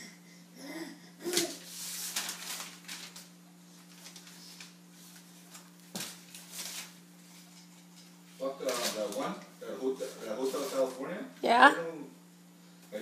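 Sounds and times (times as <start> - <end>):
baby cooing: 0.0 - 1.7
low electrical hum: 0.0 - 13.0.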